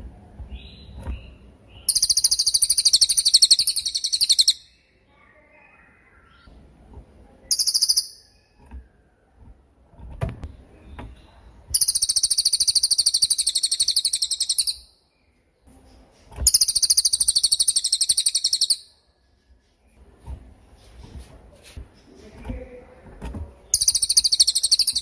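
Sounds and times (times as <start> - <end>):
bird singing fast trills: 0.6 - 4.9, 7.5 - 8.6, 11.8 - 15.0, 16.5 - 19.0, 23.7 - 25.0.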